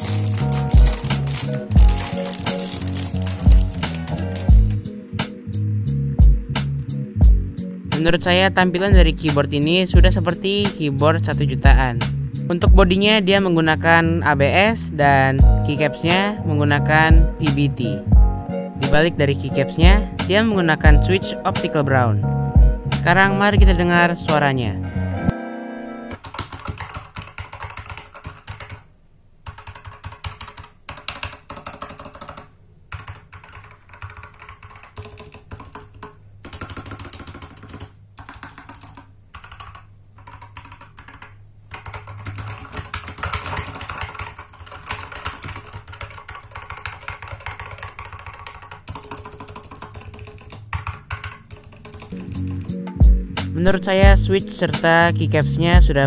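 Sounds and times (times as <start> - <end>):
mechanical keyboard typing: 0.0 - 4.8, 26.1 - 52.8.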